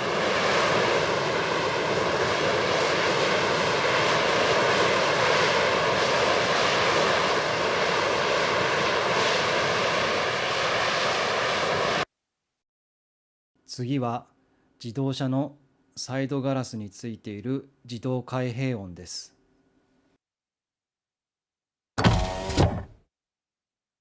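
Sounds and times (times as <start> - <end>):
faint whining tones: 22.0 - 23.0.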